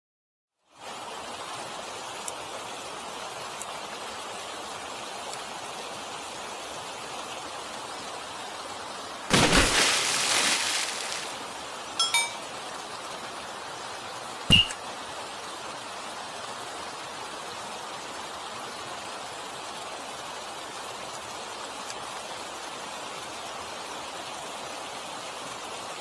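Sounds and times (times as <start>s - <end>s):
stream water rushing: 9.3s - 12.4s.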